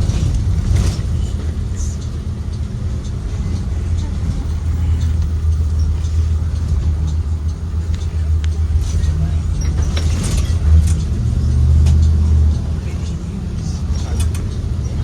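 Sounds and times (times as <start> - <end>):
bus engine and road drone: 0.0 - 15.0
cabin rattles and ticks: 0.0 - 15.0.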